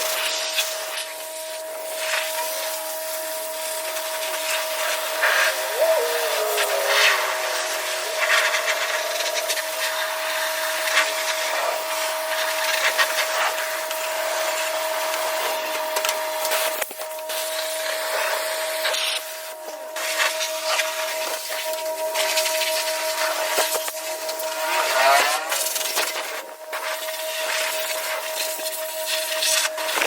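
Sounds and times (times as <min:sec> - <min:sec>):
steady whine: 0:03.9 - 0:12.1.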